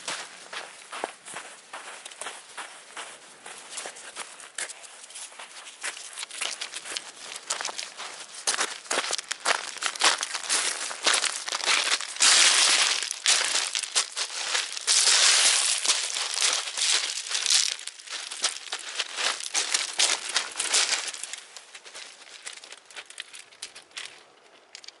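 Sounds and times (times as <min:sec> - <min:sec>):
dry material crinkling: 0:05.9 - 0:23.8.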